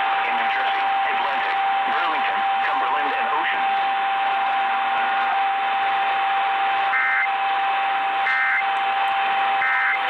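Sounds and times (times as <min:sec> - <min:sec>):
radio static: 0:00.0 - 0:10.0
short electronic beeps: 0:06.9 - 0:07.3, 0:08.2 - 0:08.8, 0:09.5 - 0:10.0
steady whistle tone: 0:06.9 - 0:10.0.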